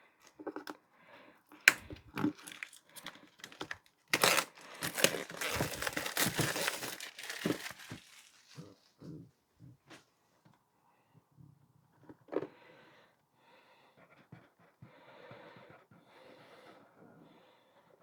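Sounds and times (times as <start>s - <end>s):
packaging rustling and clicking: 1.6s - 8.7s
packaging tearing and crinkling: 1.7s - 8.7s.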